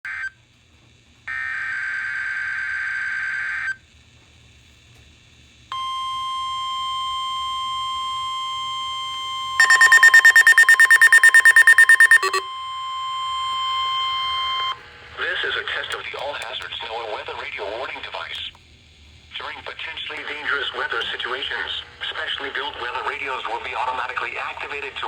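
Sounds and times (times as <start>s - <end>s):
steady warning alarm tone: 5.7s - 15.4s
rapid pulsing beeps: 5.8s - 14.8s
harsh digital data burst: 9.6s - 12.4s.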